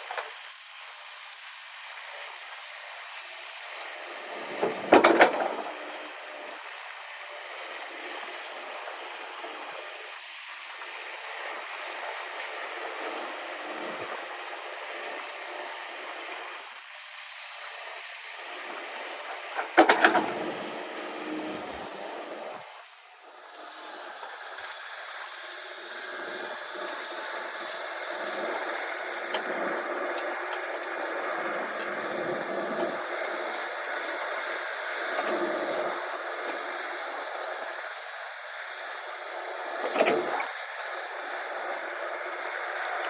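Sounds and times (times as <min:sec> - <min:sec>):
excavator engine running: 0:19.6 - 0:22.7.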